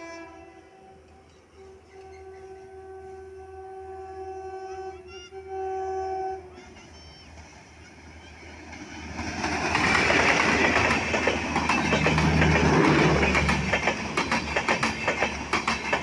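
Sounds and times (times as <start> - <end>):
train horn: 0.0 - 8.3
train rumbling past: 0.0 - 16.0
wheels clattering over rail joints: 8.7 - 16.0.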